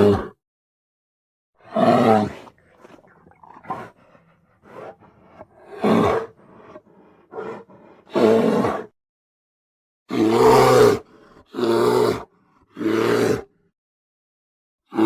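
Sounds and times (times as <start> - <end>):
bear grunting: 1.6 - 8.9
bear roaring: 1.6 - 8.9, 10.1 - 13.5.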